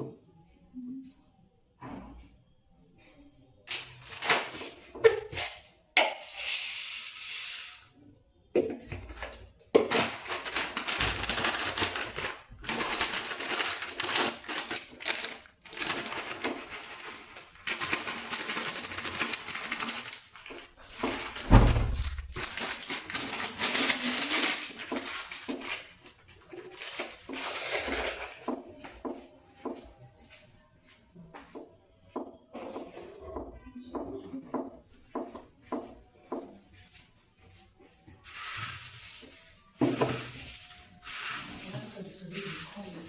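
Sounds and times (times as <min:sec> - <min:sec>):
utensils clattering in a bowl: 0:09.0 - 0:21.5, 0:22.3 - 0:33.4.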